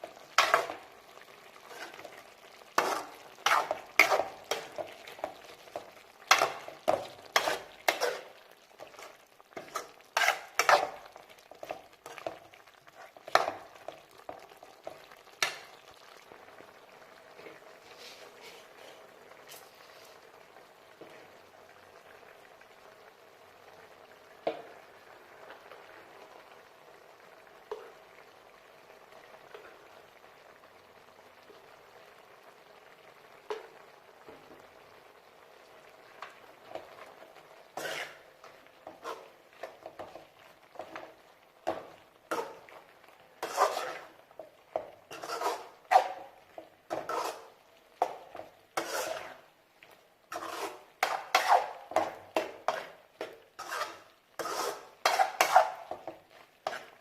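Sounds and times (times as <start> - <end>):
gravy sizzling in a pan: 0.0 - 57.0
utensil scraping a pan: 0.3 - 0.8, 1.4 - 13.6, 17.4 - 20.2, 37.8 - 40.2, 40.8 - 42.8, 43.4 - 44.2, 44.8 - 49.5, 50.3 - 57.0.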